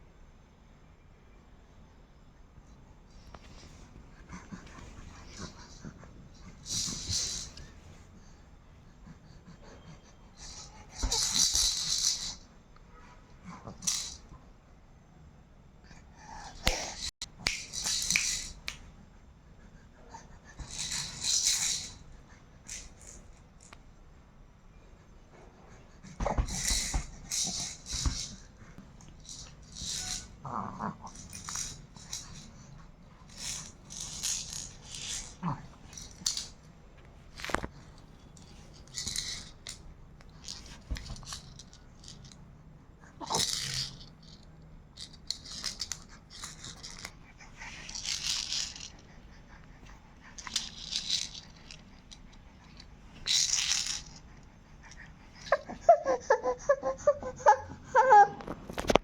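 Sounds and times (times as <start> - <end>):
rattling shaking bursts: 5.2 - 7.6, 10.4 - 12.4, 26.4 - 30.4, 45.0 - 49.1, 50.3 - 54.3.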